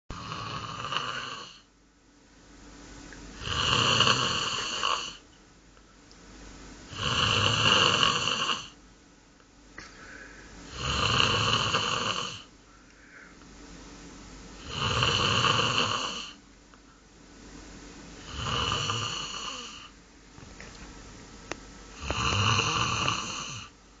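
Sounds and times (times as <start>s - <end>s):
goose rasping snore-like sounds: 0.1s - 1.6s, 3.4s - 5.2s, 6.9s - 8.8s, 10.7s - 12.5s, 14.6s - 16.4s, 18.2s - 19.9s, 22.0s - 23.8s.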